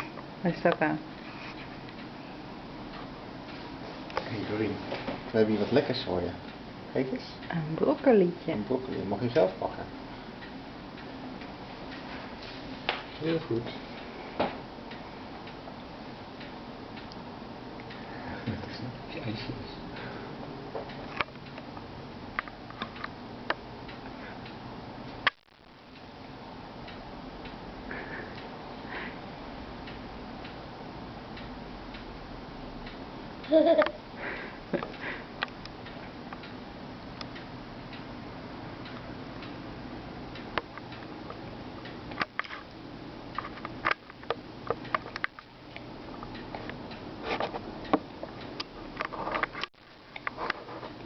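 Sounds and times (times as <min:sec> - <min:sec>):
steady background hiss: 0:00.0 - 0:51.0
steady low hum: 0:00.0 - 0:51.0
small clicks and taps: 0:43.4 - 0:50.6.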